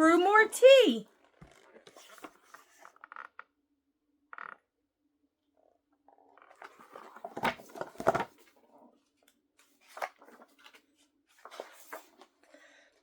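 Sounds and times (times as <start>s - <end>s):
paper pages rustling: 1.8s - 2.9s, 6.6s - 8.5s, 9.6s - 12.4s.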